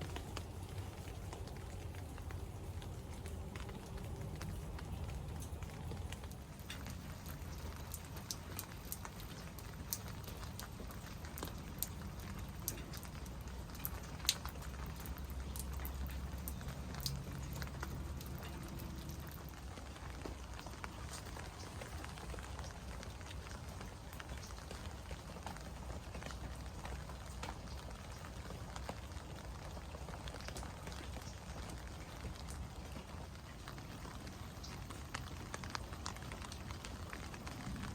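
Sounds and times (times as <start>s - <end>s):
raindrops pattering on surfaces: 0.0s - 37.9s
steady rain hiss: 0.0s - 37.9s.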